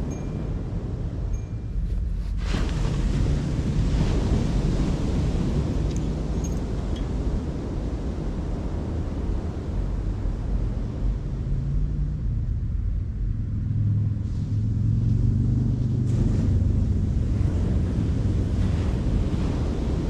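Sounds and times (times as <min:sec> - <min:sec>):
wind rumbling on microphone: 0:00.0 - 0:20.0
surf washing on shore: 0:01.9 - 0:12.0, 0:15.9 - 0:20.0.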